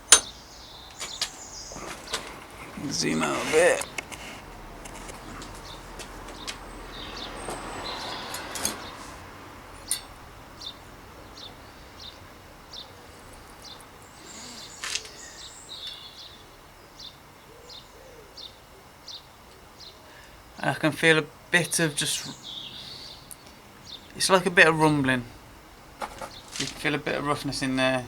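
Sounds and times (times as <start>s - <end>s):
hand tools clicking and knocking: 0.0s - 6.6s, 7.5s - 9.0s, 9.8s - 10.2s
small bird chirping: 0.0s - 20.0s.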